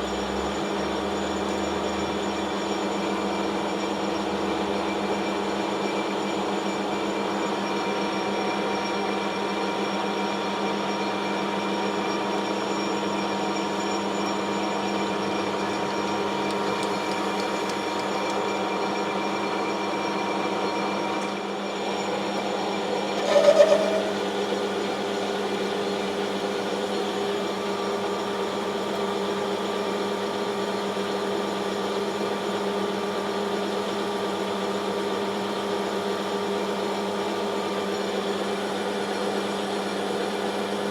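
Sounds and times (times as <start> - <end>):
lathe squeal: 0.0 - 28.5
metal lathe humming: 13.9 - 28.8.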